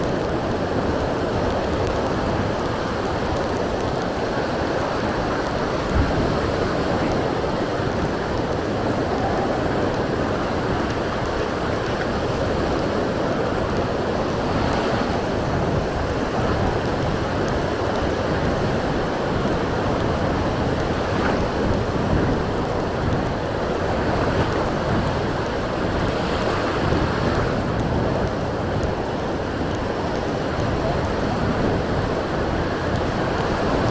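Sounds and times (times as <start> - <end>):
surf washing onto beach: 0.0 - 33.9
wind buffeting microphone: 0.0 - 33.9.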